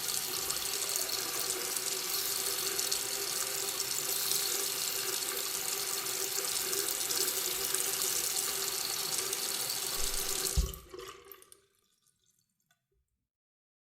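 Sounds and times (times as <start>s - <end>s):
faucet water running into sink: 0.0s - 11.7s
faucet shutoff thump: 9.9s - 10.9s
water dripping: 9.9s - 12.8s.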